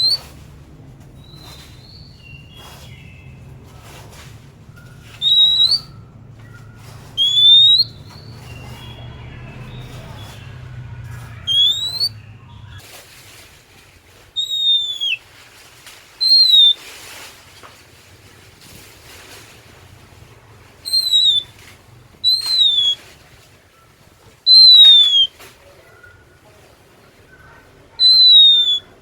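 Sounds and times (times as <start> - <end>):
bird whistled song: 0.0 - 0.5, 1.2 - 12.8, 14.4 - 15.2, 16.2 - 16.8, 20.8 - 23.0, 24.5 - 25.3, 28.0 - 29.0
low hum: 0.0 - 12.8
soft bird twitters: 0.0 - 12.9, 14.4 - 15.4, 16.2 - 17.2, 18.4 - 26.4, 27.3 - 29.0.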